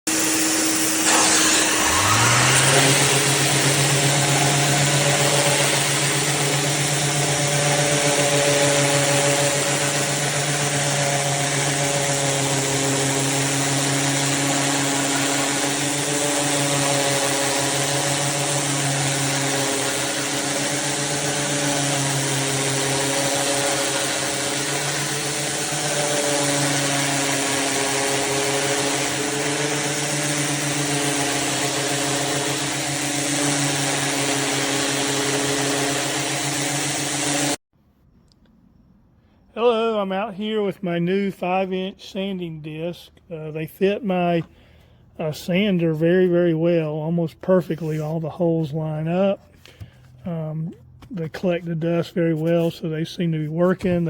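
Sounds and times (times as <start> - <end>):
electric sander motor humming: 0.1 - 37.6.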